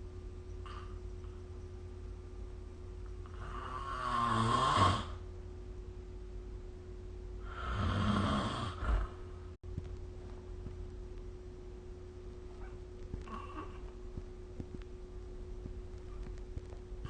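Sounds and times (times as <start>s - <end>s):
faint steady hum: 0.0s - 17.0s
person snoring: 3.3s - 5.2s, 7.4s - 9.2s.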